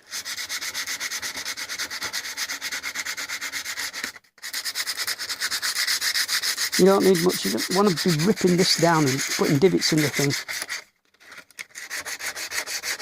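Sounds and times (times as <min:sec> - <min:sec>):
metal rubbing on abrasive: 0:00.0 - 0:10.9, 0:11.6 - 0:13.0.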